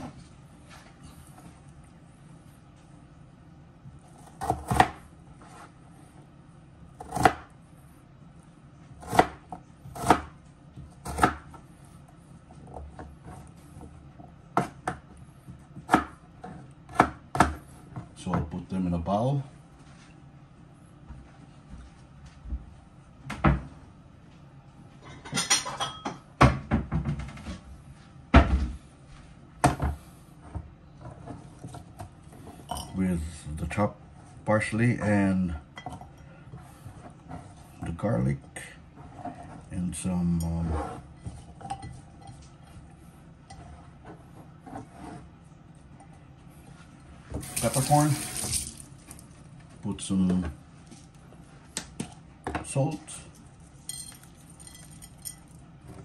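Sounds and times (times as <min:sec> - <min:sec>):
knife chopping potato: 0:04.1 - 0:05.7, 0:07.0 - 0:07.6, 0:09.0 - 0:11.7, 0:14.5 - 0:18.5
kitchen knocks and clatters: 0:25.0 - 0:27.6.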